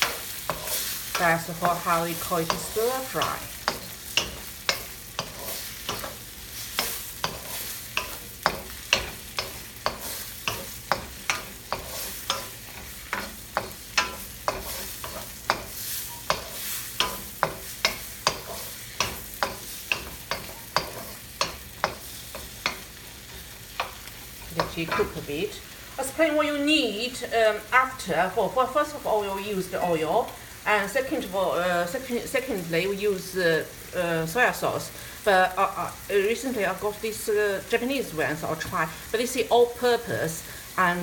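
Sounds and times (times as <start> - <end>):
utensil scraping a pan: 0.0 - 25.2
tomatoes sizzling in hot oil: 0.0 - 41.0.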